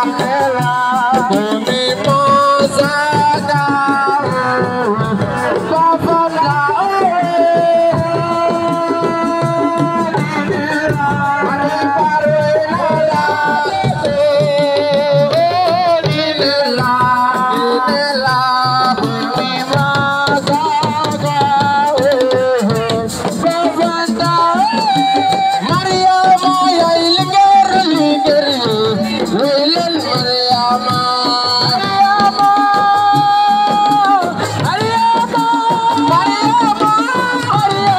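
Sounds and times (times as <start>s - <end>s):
hand drums and percussion: 0.0s - 37.9s.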